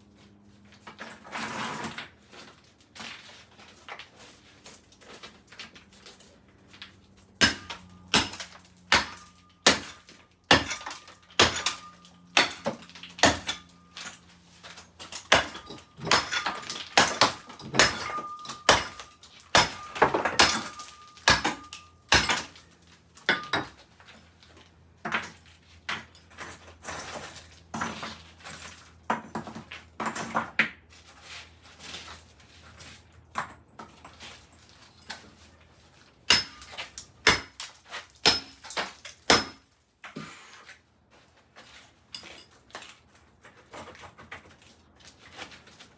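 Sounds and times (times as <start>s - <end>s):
concrete chunks clattering: 0.8s - 24.1s, 36.2s - 40.3s
hits breaking concrete: 7.4s - 14.2s, 14.8s - 22.6s, 23.2s - 23.8s, 36.3s - 39.7s.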